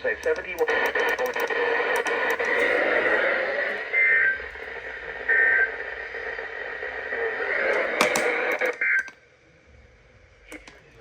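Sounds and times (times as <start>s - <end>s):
sharp clicks: 0.0s - 2.8s, 7.7s - 9.2s, 10.5s - 10.8s
radio receiver hiss: 0.0s - 9.2s, 10.5s - 11.0s.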